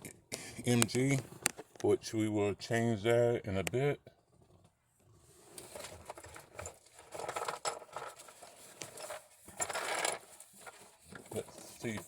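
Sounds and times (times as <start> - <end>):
rustling: 5.2 - 12.0
scraping rustle: 5.3 - 12.0.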